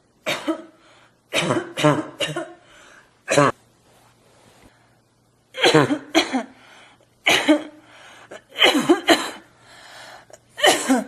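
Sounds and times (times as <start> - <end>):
person coughing harshly: 0.2 - 3.6, 5.6 - 6.6, 7.2 - 9.5, 10.6 - 11.0.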